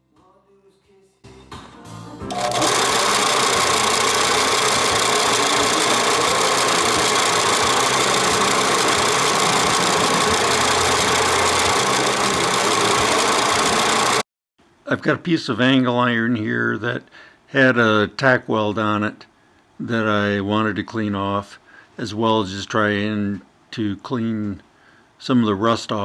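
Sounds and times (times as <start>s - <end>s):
belt sander grinding steel: 2.3s - 14.2s.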